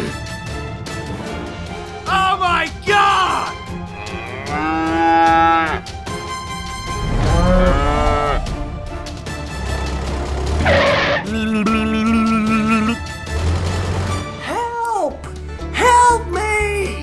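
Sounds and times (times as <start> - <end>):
background music: 0.0 - 17.0
cow mooing: 3.9 - 5.9, 7.3 - 8.5.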